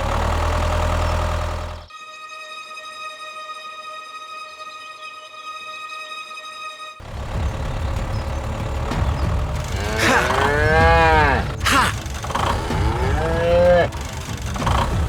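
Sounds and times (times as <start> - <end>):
low rumble: 7.0 - 11.7
moo-like calls: 9.6 - 14.1.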